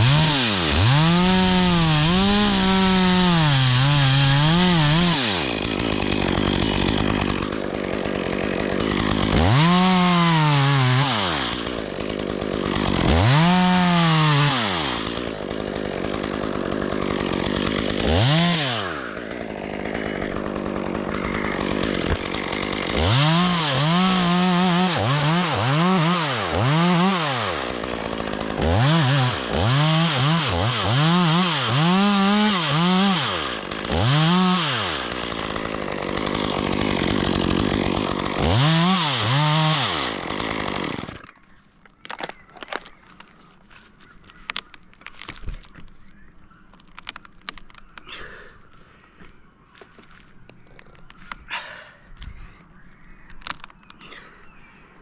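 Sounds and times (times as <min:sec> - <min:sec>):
chainsaw revving: 0:00.0 - 0:41.4.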